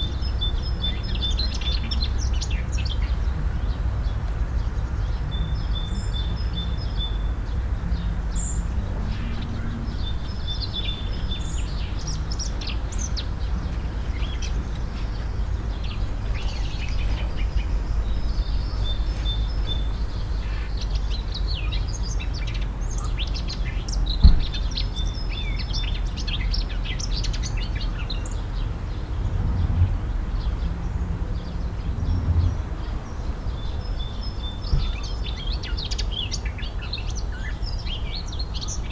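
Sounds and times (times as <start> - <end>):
small birds chirping: 0.0 - 29.4, 30.1 - 38.9.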